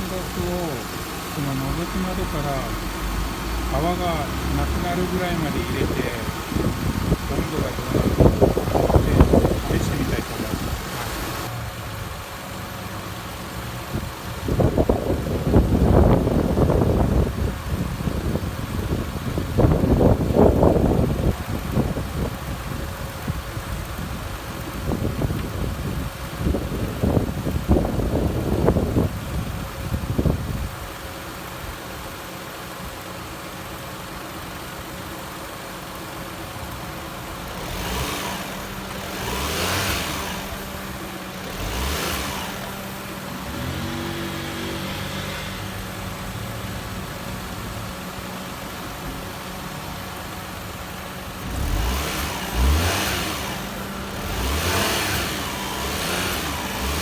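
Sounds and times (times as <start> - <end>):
engine revving: 0.0 - 11.8, 36.6 - 48.2, 48.9 - 57.0
small car engine idling: 0.0 - 57.0
rumbling on the microphone: 3.8 - 11.5.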